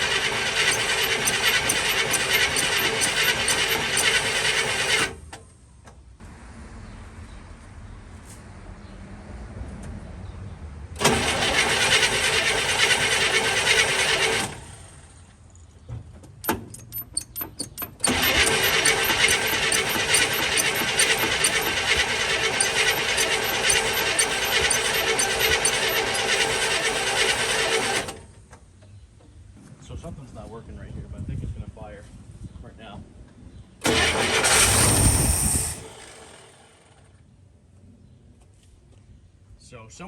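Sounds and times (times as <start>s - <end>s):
engine cranking without firing: 0.0s - 5.4s, 11.0s - 15.0s, 16.4s - 28.3s, 33.8s - 37.1s.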